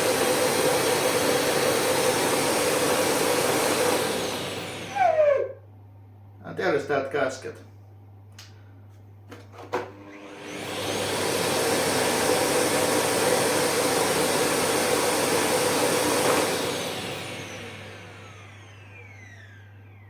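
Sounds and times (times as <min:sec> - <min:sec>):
vacuum cleaner motor running: 0:00.0 - 0:05.6, 0:09.6 - 0:20.0.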